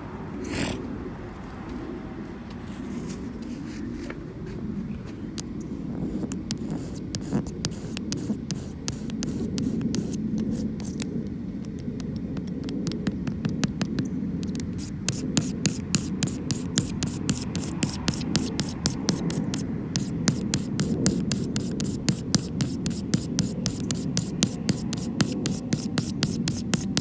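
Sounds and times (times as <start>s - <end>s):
steady low hum: 0.0s - 27.0s
scraping resin off glass: 13.3s - 27.0s.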